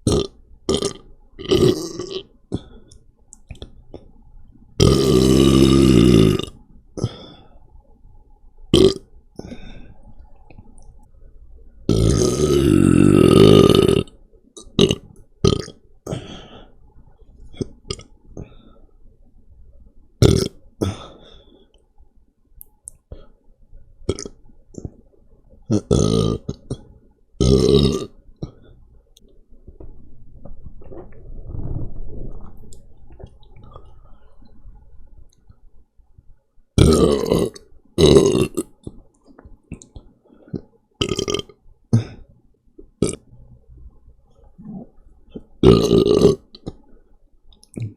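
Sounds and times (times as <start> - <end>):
person burping: 0.0 - 2.7, 4.8 - 7.2, 8.8 - 9.0, 11.9 - 16.4, 17.6 - 18.1, 20.2 - 21.2, 24.1 - 24.4, 25.7 - 28.6, 36.8 - 38.8, 40.6 - 42.2, 43.0 - 43.3, 45.6 - 46.7.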